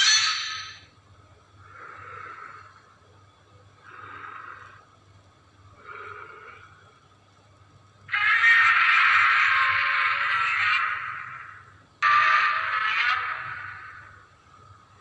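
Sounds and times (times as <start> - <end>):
hoarse creature sounds: 8.1 - 14.3
monster cry: 8.1 - 14.3.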